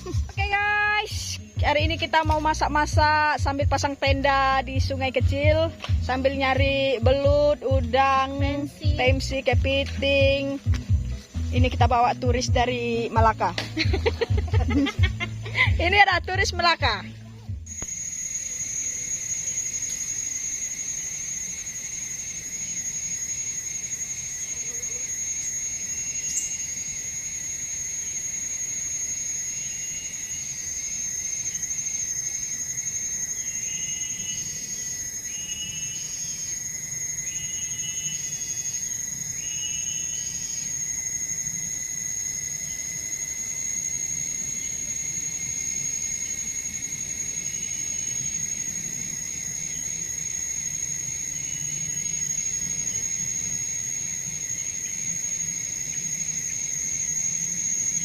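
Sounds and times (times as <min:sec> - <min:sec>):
insects droning: 0:00.0 - 0:58.0
short chirping calls: 0:33.0 - 0:40.8.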